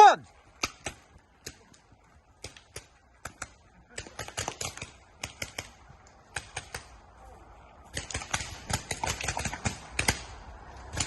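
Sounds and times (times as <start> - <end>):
paintball markers firing: 2.4 - 7.0, 7.9 - 11.0.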